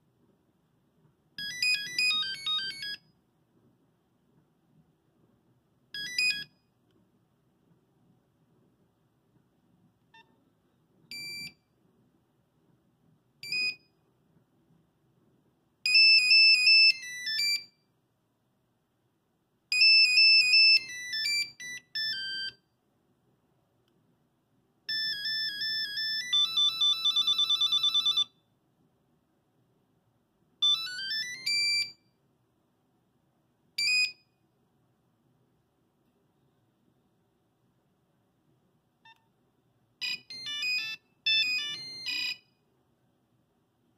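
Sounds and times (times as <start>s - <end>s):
monophonic phone ringtones: 1.4s - 3.0s, 15.9s - 17.7s, 19.8s - 22.6s, 24.9s - 28.4s, 30.6s - 32.0s, 40.0s - 42.5s.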